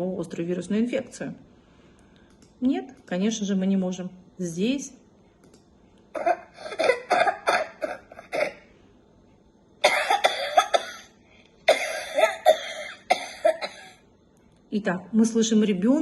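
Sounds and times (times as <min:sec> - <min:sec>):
child coughing wetly: 0:06.2 - 0:08.7, 0:09.8 - 0:11.1, 0:11.7 - 0:14.0.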